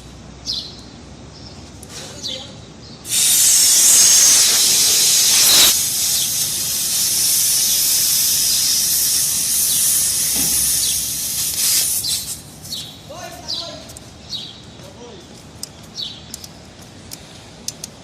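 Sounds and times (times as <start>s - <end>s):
pressurised gas hissing: 3.0s - 12.8s.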